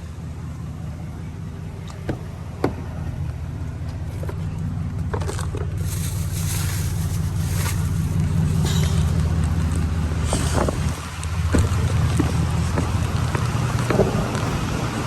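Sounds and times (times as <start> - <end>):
vehicle engine and road drone: 0.0 - 15.0
rain and water spray hiss: 5.8 - 15.0.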